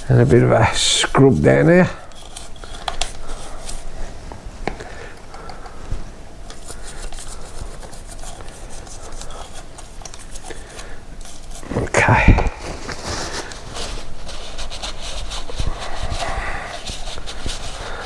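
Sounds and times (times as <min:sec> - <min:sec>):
scratchy scrubbing strokes: 0:06.6 - 0:18.0.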